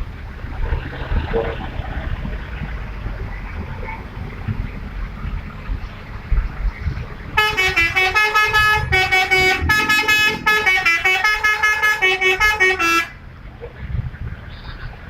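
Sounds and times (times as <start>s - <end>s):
low rumble: 0.0s - 15.0s
bus air horn playing a melody: 7.4s - 13.2s.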